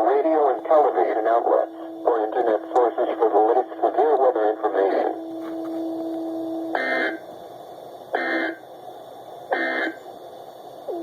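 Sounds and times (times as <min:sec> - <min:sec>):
steady low tone: 0:00.0 - 0:11.0
screeching digital data bursts: 0:06.7 - 0:07.2.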